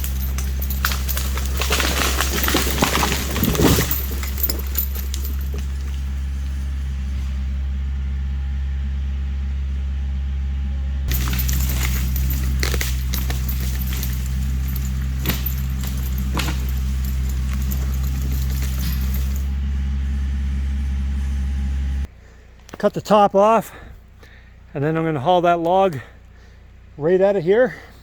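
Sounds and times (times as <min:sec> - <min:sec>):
chain clanking: 0:00.0 - 0:06.7, 0:11.1 - 0:19.6
log being dragged: 0:00.0 - 0:06.9, 0:11.1 - 0:19.5
tractor diesel engine running: 0:00.0 - 0:22.1.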